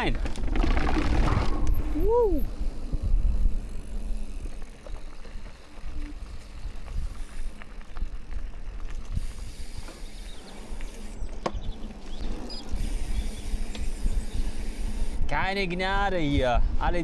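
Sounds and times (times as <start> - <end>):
bike knocks and rattles: 0.0 - 2.0
bike tyre and wind noise: 0.0 - 17.0.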